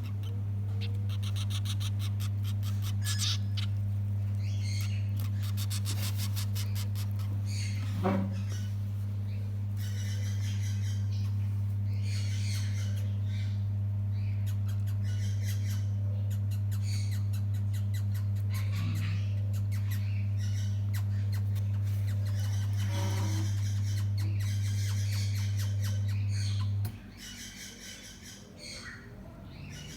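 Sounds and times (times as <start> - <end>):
chicks begging squawks: 0.0 - 29.9
steady low hum: 0.0 - 29.9.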